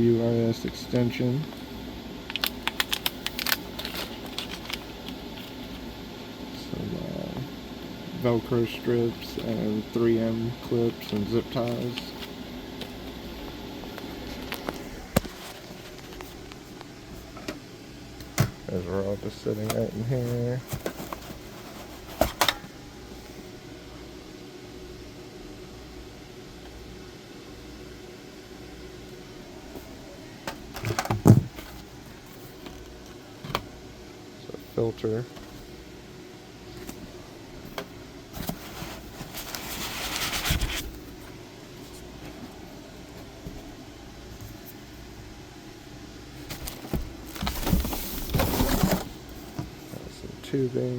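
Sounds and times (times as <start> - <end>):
steady low hum: 0.0 - 50.9
packaging being handled: 2.3 - 5.8, 19.6 - 22.5, 38.4 - 41.2, 46.4 - 49.6.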